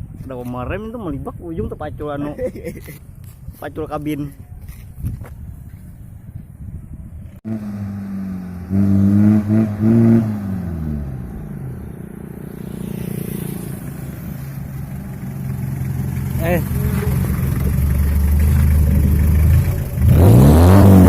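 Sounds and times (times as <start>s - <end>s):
engine idling and revving: 7.3s - 21.0s.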